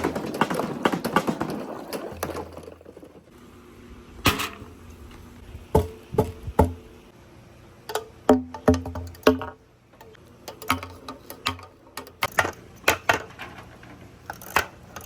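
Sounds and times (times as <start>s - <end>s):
balls rattling down marble run: 0.0s - 3.3s
ball hitting metal ringing: 4.3s - 4.8s.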